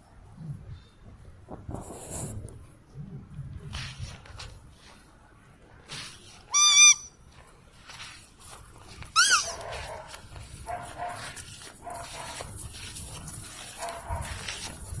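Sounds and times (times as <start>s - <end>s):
puppies whining: 6.5s - 7.1s, 9.2s - 9.6s.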